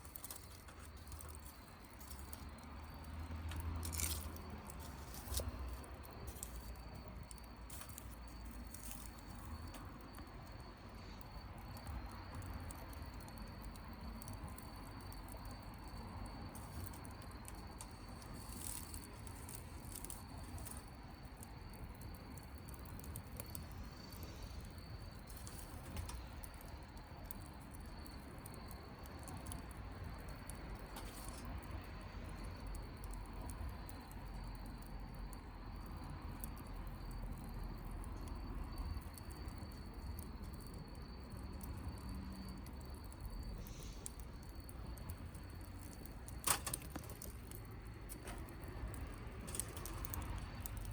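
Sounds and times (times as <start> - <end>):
wood fire crackling: 0.0 - 50.9.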